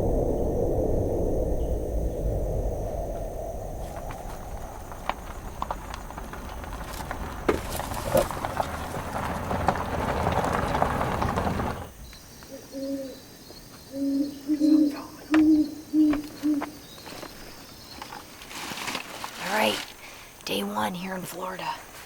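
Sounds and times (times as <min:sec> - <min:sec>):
steady rushing noise: 0:00.0 - 0:12.0
owl hooting: 0:12.5 - 0:13.2, 0:13.9 - 0:16.8.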